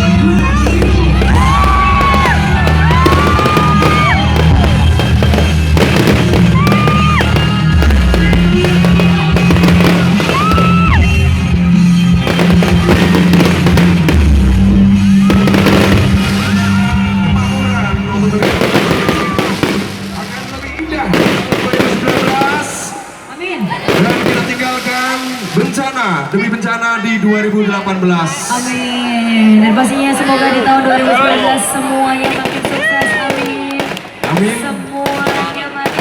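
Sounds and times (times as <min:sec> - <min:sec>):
loud music with heavy bass: 0:00.0 - 0:22.5
fireworks bangs and crackles: 0:00.0 - 0:26.1, 0:32.0 - 0:36.0.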